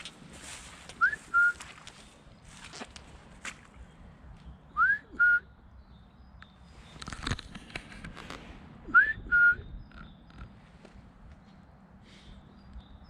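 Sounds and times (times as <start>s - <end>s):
person whistling two-note call: 1.0s - 1.6s, 4.8s - 5.4s, 8.9s - 9.6s.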